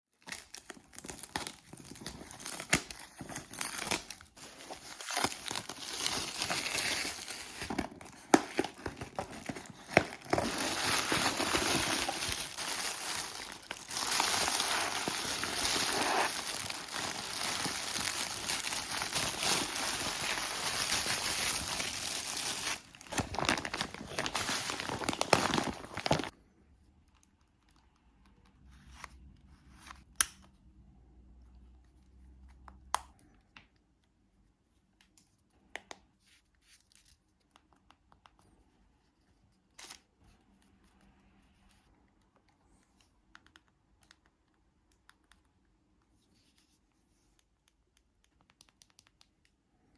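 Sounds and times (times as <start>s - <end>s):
packaging crinkling and tearing: 0.2s - 26.4s.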